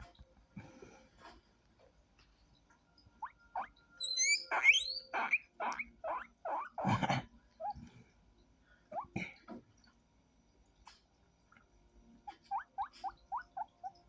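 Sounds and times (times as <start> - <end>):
small rodent squeaking: 3.2 - 6.9, 12.3 - 14.0
high rising whistles: 4.0 - 5.1.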